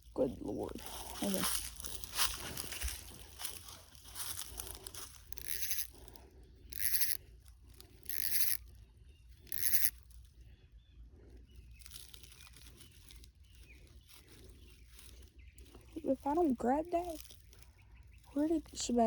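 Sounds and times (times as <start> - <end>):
footsteps on sand: 0.7 - 5.2.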